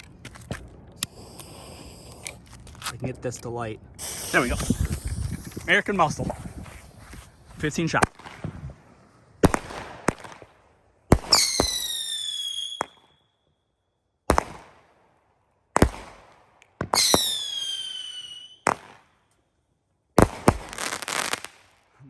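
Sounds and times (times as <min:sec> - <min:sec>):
fireworks bangs: 0:04.0 - 0:13.1, 0:16.8 - 0:19.0, 0:20.2 - 0:21.6
falling firework whistle: 0:11.3 - 0:13.4, 0:17.0 - 0:18.7.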